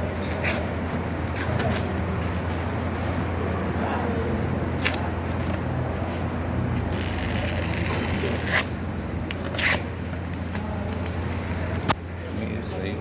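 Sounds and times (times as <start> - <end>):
backing paper peeling off tape: 6.9 - 8.7.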